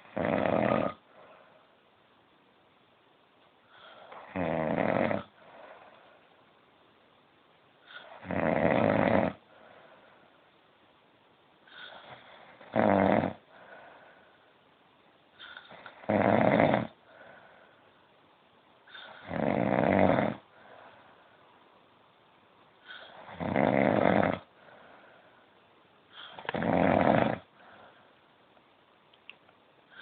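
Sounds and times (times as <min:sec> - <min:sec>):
quiet breathing: 0:00.0 - 0:02.0, 0:03.6 - 0:06.5, 0:07.7 - 0:08.3, 0:09.3 - 0:10.6, 0:11.6 - 0:12.7, 0:13.3 - 0:16.1, 0:16.9 - 0:19.4, 0:20.3 - 0:22.0, 0:22.6 - 0:26.6, 0:27.4 - 0:28.6, 0:29.8 - 0:30.0
man snoring loudly: 0:00.1 - 0:01.0, 0:04.2 - 0:05.3, 0:08.0 - 0:09.4, 0:11.9 - 0:13.4, 0:15.9 - 0:17.0, 0:19.2 - 0:20.4, 0:23.2 - 0:24.5, 0:26.4 - 0:27.5.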